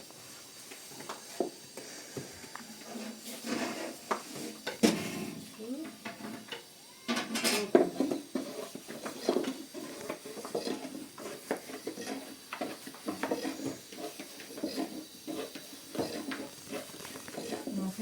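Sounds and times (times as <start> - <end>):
dishes and utensils clinking: 6.0 - 18.0.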